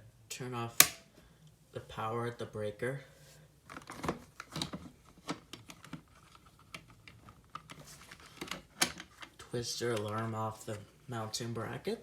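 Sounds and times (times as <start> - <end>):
hands clicking plastic parts: 0.8 - 1.1
sharp loud click: 0.8 - 1.1.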